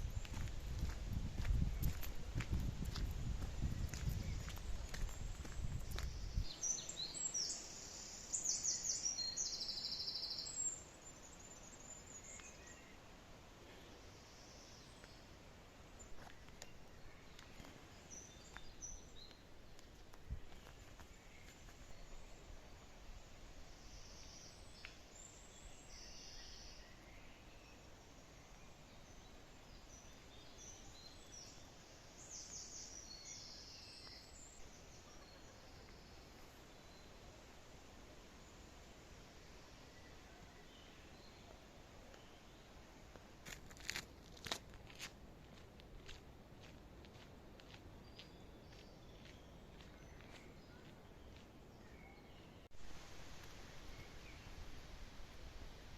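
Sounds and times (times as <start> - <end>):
low background hiss: 0.0 - 43.9, 45.2 - 55.9
faint birdsong: 0.0 - 45.1, 46.0 - 55.9
faint forest background: 0.0 - 55.9
songbird chirping and trilling: 2.9 - 13.0, 48.1 - 52.7.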